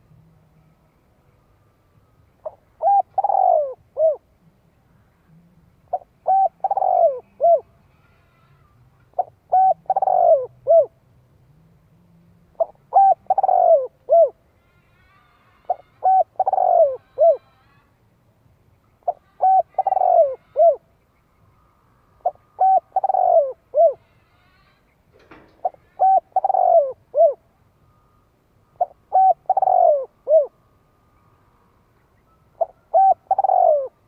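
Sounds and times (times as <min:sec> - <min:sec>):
dove cooing: 0:02.4 - 0:04.3, 0:05.2 - 0:07.8, 0:09.1 - 0:11.0, 0:12.5 - 0:14.4, 0:15.7 - 0:17.5, 0:19.0 - 0:20.9, 0:22.2 - 0:24.1, 0:25.5 - 0:27.5, 0:28.8 - 0:30.6, 0:32.6 - 0:34.0.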